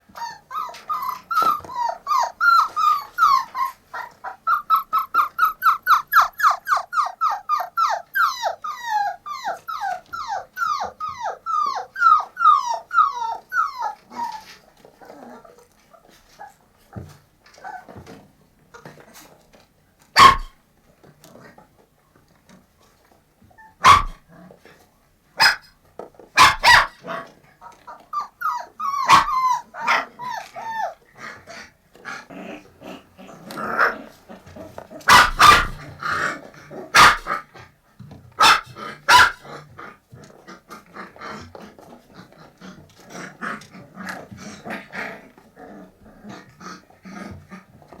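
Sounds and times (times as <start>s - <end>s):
puppies barking: 0.1s - 14.5s, 20.2s - 20.6s, 23.8s - 24.2s, 25.4s - 25.7s, 26.4s - 31.0s, 33.7s - 36.3s, 36.9s - 37.4s, 38.4s - 39.5s
puppies whimpering: 0.1s - 18.2s, 27.6s - 31.6s.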